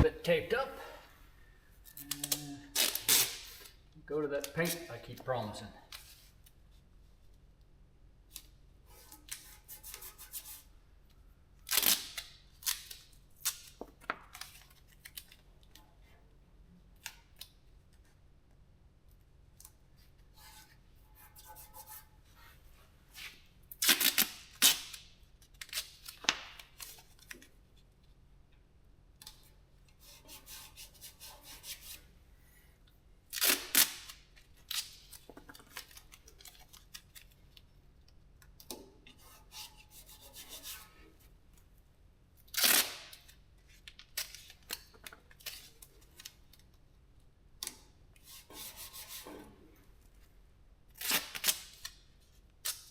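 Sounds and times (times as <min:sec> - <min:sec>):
masking tape ripping: 0:01.9 - 0:03.8, 0:11.7 - 0:15.3, 0:23.7 - 0:27.4, 0:33.3 - 0:37.3, 0:42.5 - 0:43.4, 0:50.9 - 0:52.0.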